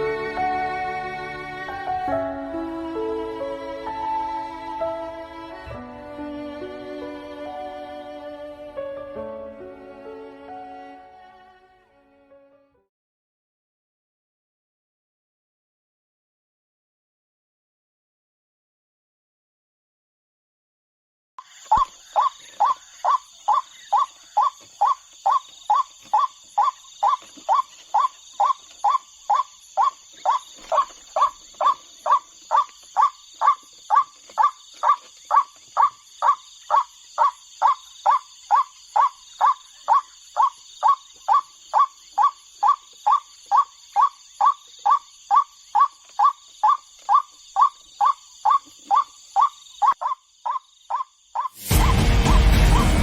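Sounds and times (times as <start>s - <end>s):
waterhen hoarse calls: 21.5s - 52.9s.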